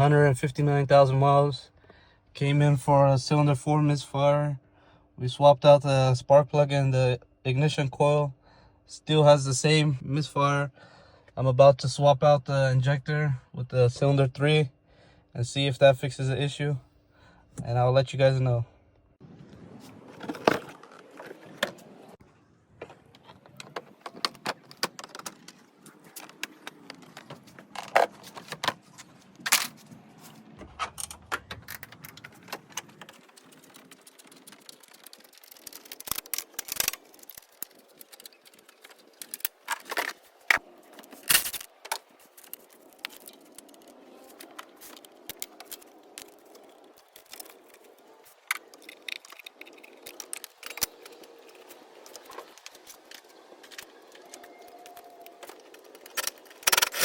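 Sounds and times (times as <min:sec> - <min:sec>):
tools and metal parts clinking: 0:30.6 - 0:57.0.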